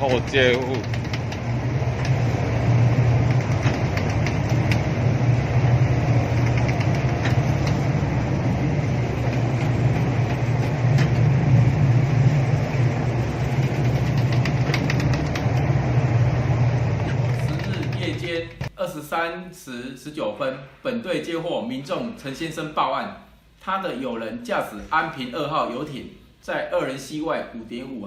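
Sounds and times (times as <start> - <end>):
boat engine humming: 0.0 - 18.7
broad rushing noise: 0.0 - 18.7.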